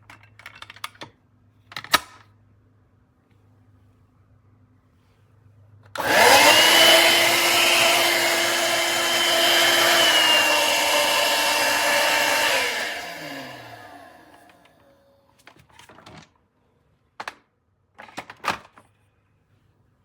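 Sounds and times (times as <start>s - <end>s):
vacuum cleaner motor whine: 6.0s - 15.1s.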